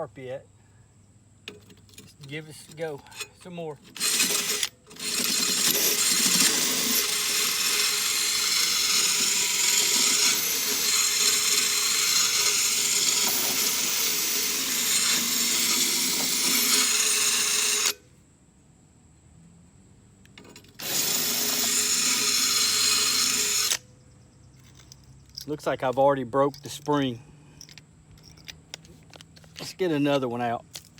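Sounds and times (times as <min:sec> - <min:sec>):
drill grinding stone on metal blade: 0:02.5 - 0:18.0, 0:20.8 - 0:23.8.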